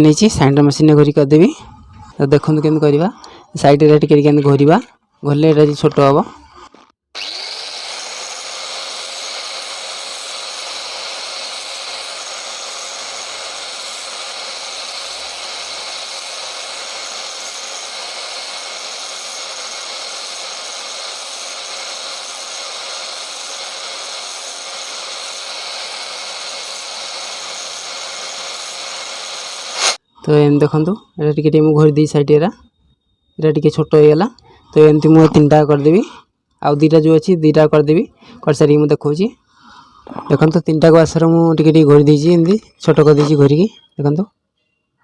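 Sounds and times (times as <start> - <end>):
electric grinder grinding metal: 6.6 - 30.0.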